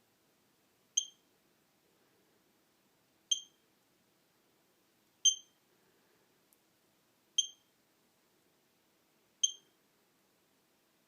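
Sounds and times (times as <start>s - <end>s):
keypad beeps: 1.0s - 1.2s, 3.3s - 3.6s, 5.2s - 5.6s, 7.4s - 7.7s, 9.4s - 9.7s.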